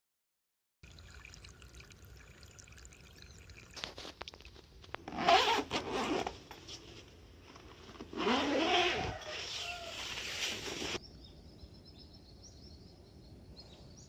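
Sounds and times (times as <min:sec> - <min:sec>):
scraping rustling noise: 0:05.1 - 0:11.0.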